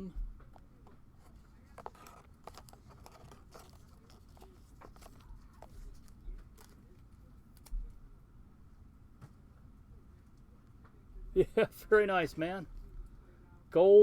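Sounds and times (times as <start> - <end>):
cards clicking and tapping: 0.4 - 7.7.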